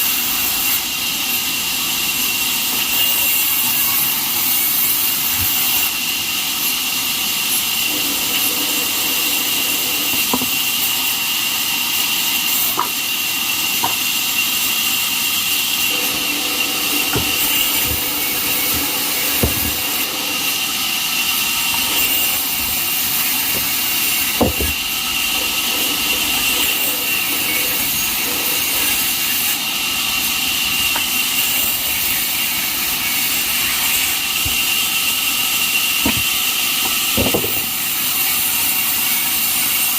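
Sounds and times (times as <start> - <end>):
band saw cutting wood: 7.5 - 39.2
knocks: 16.0 - 20.4.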